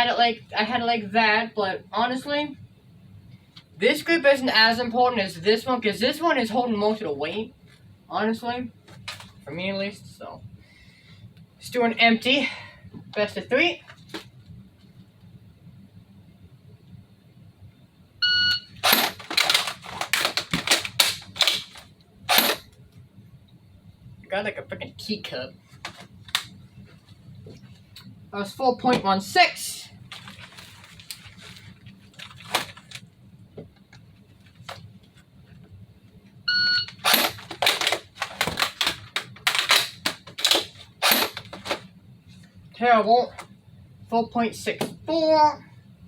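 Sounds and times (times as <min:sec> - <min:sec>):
airsoft gun shots and clicks: 0:18.8 - 0:22.6, 0:37.0 - 0:41.8.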